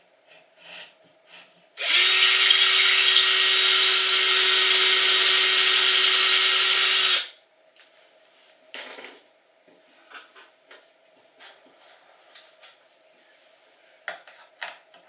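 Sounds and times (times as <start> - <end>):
power drill driving screw into wood: 1.8 - 7.3.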